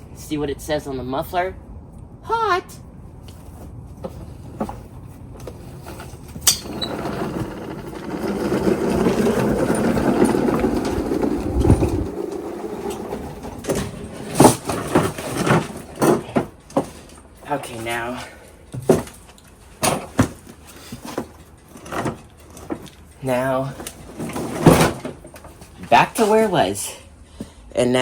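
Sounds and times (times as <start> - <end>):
push lawnmower rattling: 5.7 - 17.1.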